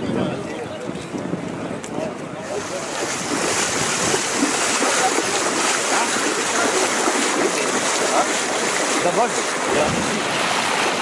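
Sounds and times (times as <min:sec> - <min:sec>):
floodwater rushing: 0:02.4 - 0:11.0.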